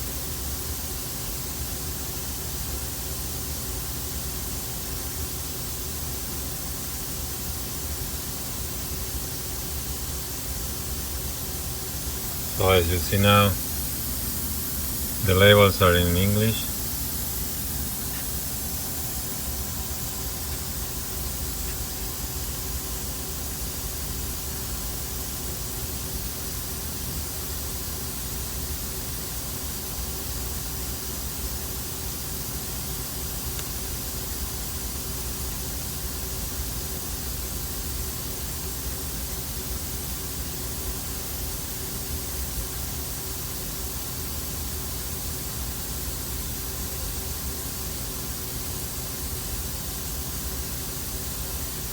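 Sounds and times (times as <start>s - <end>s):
lathe humming and hissing: 0.6s - 30.0s
faint steady tones: 12.1s - 21.8s.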